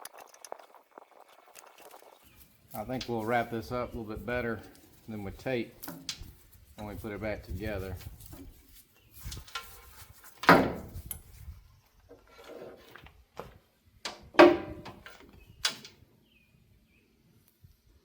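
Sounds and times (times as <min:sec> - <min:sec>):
hand tools knocking and clattering: 0:14.1 - 0:15.9.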